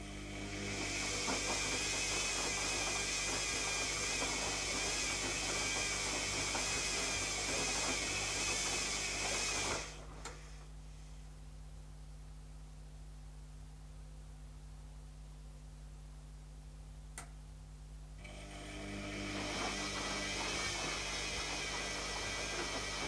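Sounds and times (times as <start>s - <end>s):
washing machine rattling whir: 0.0s - 10.6s, 18.2s - 23.0s.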